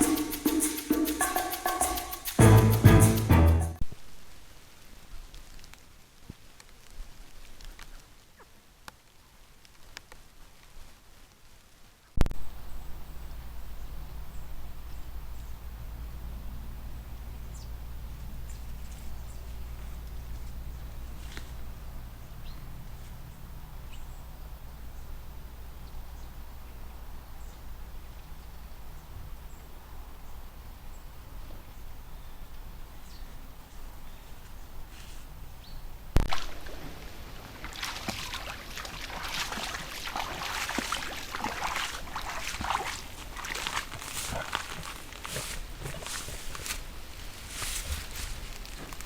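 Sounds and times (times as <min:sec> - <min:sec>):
low steady hum: 0:12.4 - 0:49.0
undergrowth rustling and crackling: 0:16.6 - 0:23.9, 0:34.0 - 0:49.0.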